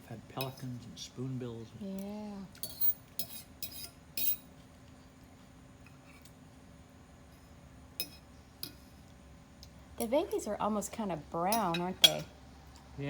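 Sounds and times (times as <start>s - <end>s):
faint steady hum: 0.0s - 13.0s
cutlery clinking against dishes: 0.4s - 0.8s, 2.6s - 4.5s, 8.0s - 8.8s, 11.5s - 12.4s.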